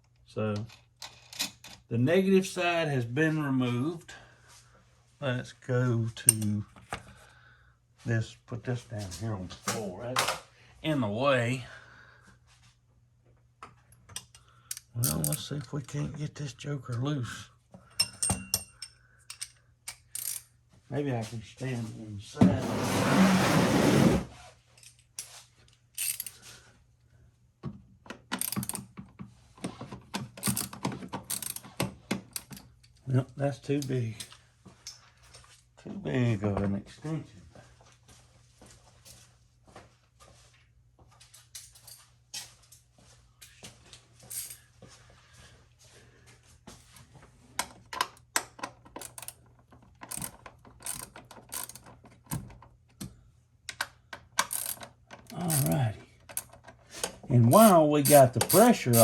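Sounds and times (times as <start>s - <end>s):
metal socket clinks: 17.9s - 20.5s, 26.0s - 26.4s, 28.4s - 28.8s, 31.3s - 31.6s, 44.3s - 44.6s, 49.0s - 49.4s, 55.5s - 55.8s
socket wrench ratchet clicking: 18.0s - 20.4s, 26.0s - 26.3s, 28.4s - 28.8s, 30.4s - 30.7s, 31.3s - 31.6s, 48.5s - 49.4s, 50.0s - 52.4s, 53.7s - 56.5s, 57.5s - 59.0s.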